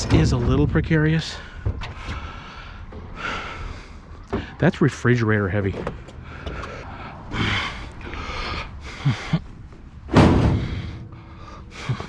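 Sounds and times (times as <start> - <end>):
heavy thud: 10.1 - 12.0.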